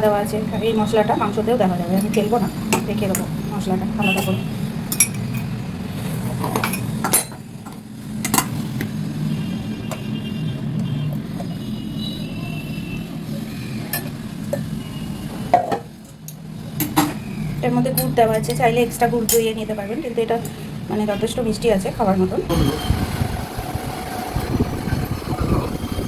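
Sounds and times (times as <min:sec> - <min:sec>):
metal utensils clinking: 0:01.8 - 0:07.5, 0:13.9 - 0:14.7, 0:17.8 - 0:20.6.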